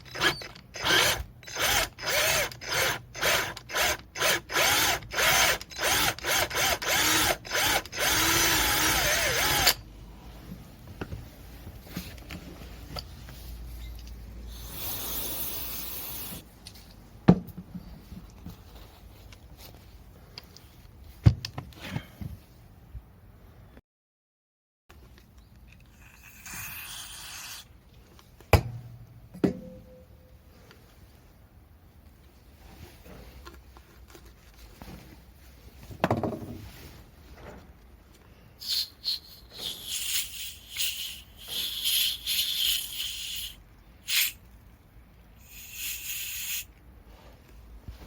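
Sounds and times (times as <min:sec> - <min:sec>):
air hiss: 0:14.5 - 0:16.4, 0:38.6 - 0:44.4, 0:45.4 - 0:46.7.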